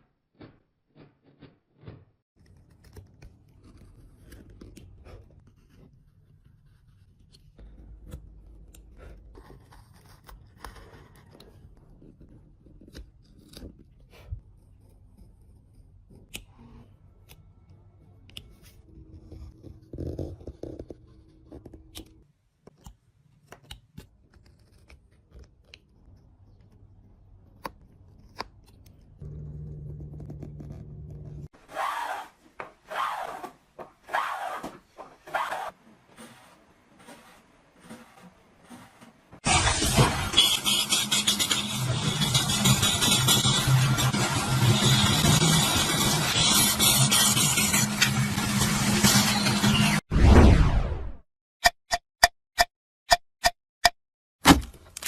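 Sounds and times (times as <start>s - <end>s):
wood scraping and cutting: 29.2s - 50.0s.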